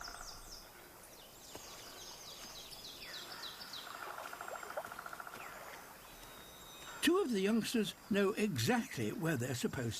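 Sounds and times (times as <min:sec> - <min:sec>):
bird trill: 0:00.0 - 0:00.6
birds chirping: 0:00.0 - 0:09.9.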